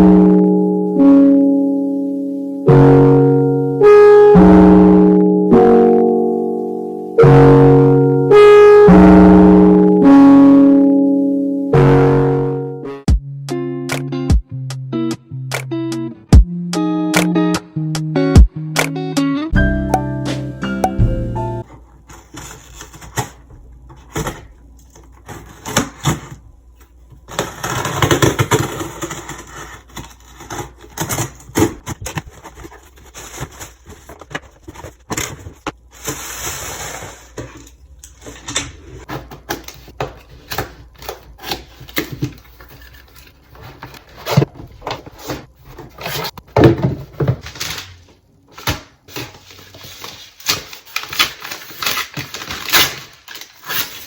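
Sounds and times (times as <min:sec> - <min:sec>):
rustling: 0:21.7 - 0:54.0.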